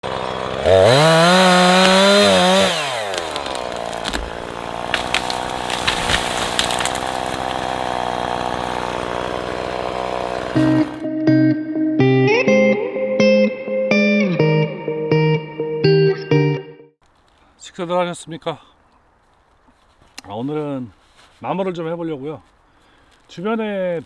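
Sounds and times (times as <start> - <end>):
chainsaw revving: 0.0 - 11.1.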